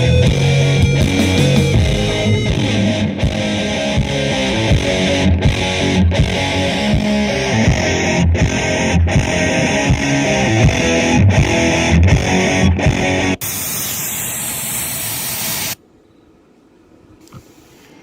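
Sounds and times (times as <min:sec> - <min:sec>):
rock music with distorted guitar: 0:00.0 - 0:13.5
steady hiss-like noise: 0:13.3 - 0:18.0.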